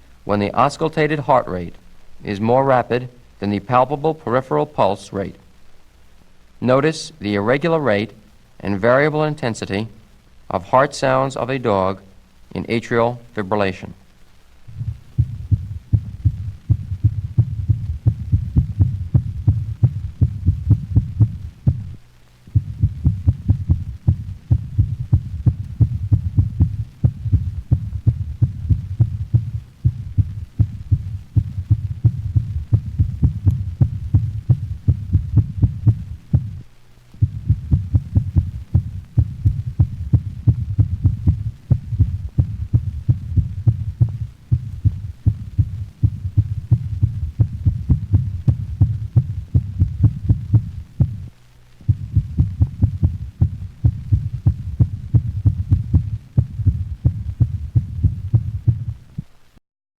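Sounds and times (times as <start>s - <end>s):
low rumble: 14.6s - 59.3s
rapid irregular heartbeats: 14.6s - 59.3s.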